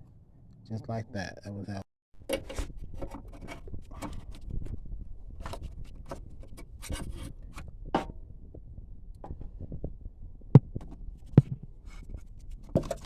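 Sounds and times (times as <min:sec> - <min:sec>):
plastic parts clicking and rattling: 0:02.2 - 0:04.5.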